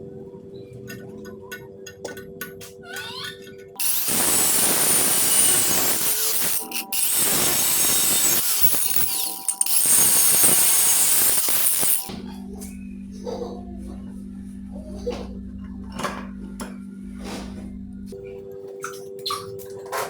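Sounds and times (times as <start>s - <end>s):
power tool hissing rush: 3.8s - 12.1s.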